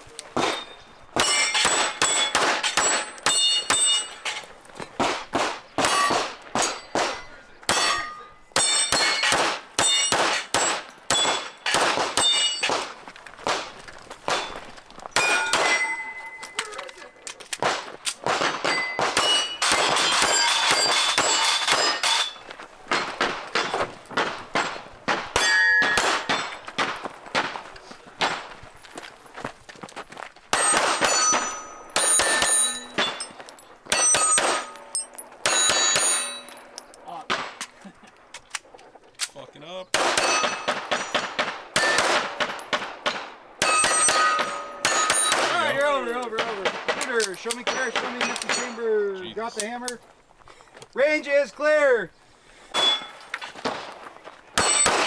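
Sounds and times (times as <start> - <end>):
pistol shots: 0.1 - 28.6, 30.5 - 38.6, 39.2 - 48.9, 52.7 - 55.0
steel target plate ringing: 0.4 - 4.9, 5.8 - 12.9, 14.2 - 16.7, 18.6 - 23.8, 25.4 - 26.8, 30.6 - 37.0, 40.0 - 42.9, 43.6 - 46.3, 52.7 - 53.4, 54.6 - 55.0.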